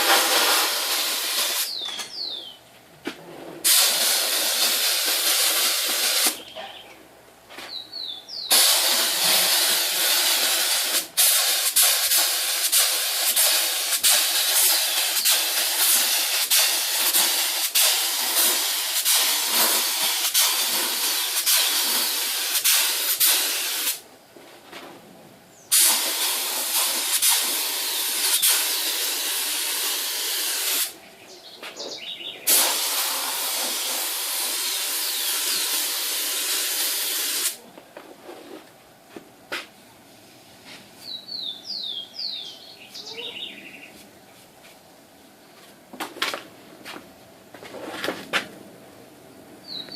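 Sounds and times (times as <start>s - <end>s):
paint spray gun hissing: 0.0s - 1.8s, 3.7s - 6.4s, 8.5s - 24.0s, 25.7s - 31.0s, 32.5s - 37.6s
bird chirping: 1.6s - 2.7s, 6.4s - 7.0s, 7.7s - 8.6s, 31.0s - 32.5s, 41.0s - 44.0s, 49.6s - 49.9s.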